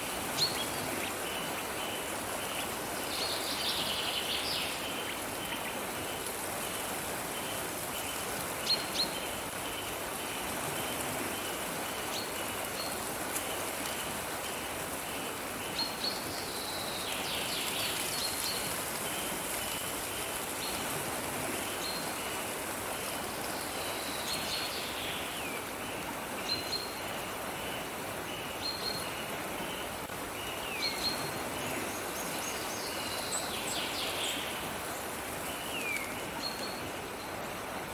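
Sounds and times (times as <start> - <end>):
stream running: 0.0 - 37.9.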